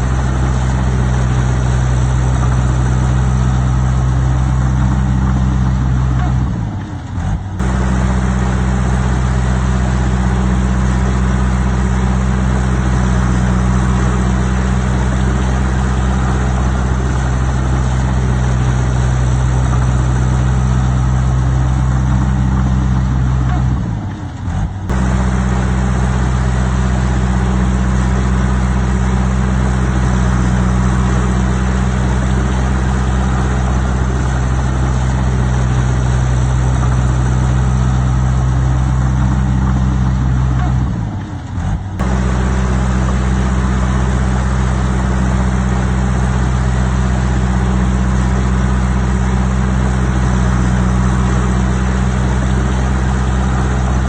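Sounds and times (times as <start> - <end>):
heavy diesel engine running: 0.0 - 54.0.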